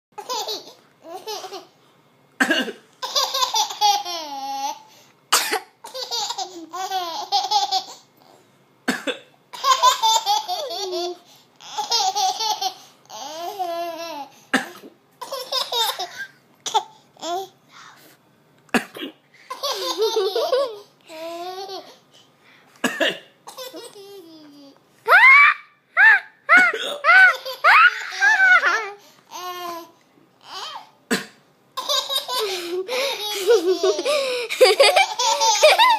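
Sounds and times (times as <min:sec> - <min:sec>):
person coughing: 0:02.4 - 0:02.8, 0:22.8 - 0:23.4, 0:26.5 - 0:27.2, 0:31.1 - 0:31.4
baby giggling: 0:19.5 - 0:22.0, 0:26.0 - 0:29.9, 0:31.8 - 0:35.9.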